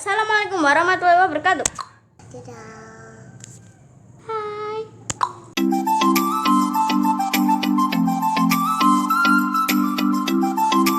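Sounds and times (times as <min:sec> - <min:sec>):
upbeat background music: 0:05.2 - 0:10.9.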